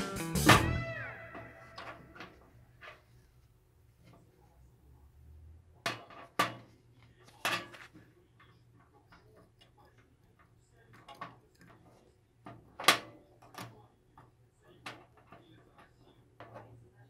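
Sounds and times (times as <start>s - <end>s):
plucked guitar chord: 0.0s - 1.8s.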